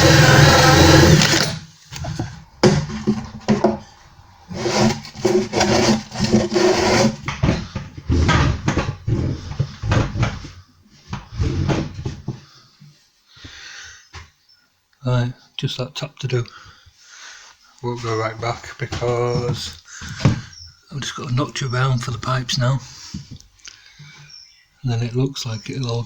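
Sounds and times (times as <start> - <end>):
hole saw cutting chipboard: 0.0 - 1.6, 4.5 - 7.2.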